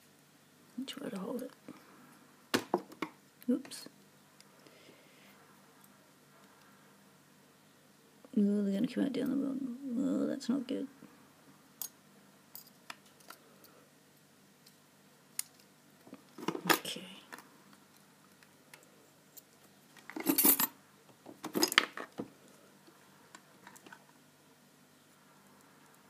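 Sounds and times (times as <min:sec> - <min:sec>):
lock parts clicking and clinking: 0:21.4 - 0:22.2.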